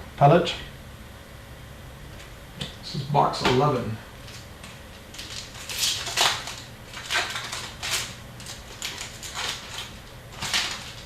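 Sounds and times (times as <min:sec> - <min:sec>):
card wrappers crinkling: 0:04.2 - 0:11.0.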